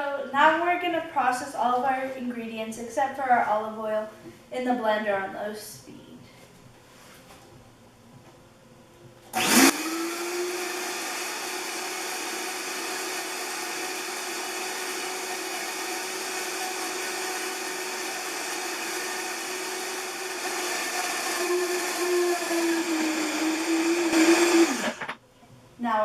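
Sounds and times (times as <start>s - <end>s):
blender running: 9.3s - 25.2s.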